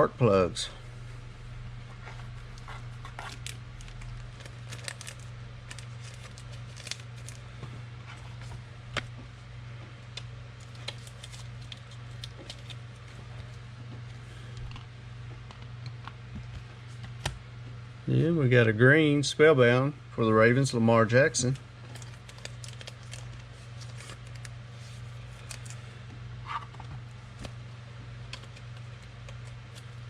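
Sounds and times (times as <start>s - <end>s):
steady low hum: 0.0s - 30.0s
cards clicking and rustling: 10.1s - 13.2s, 28.3s - 30.0s.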